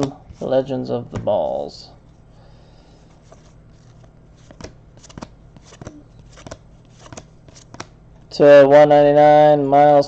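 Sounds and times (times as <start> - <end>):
cards flicking: 3.3 - 8.0.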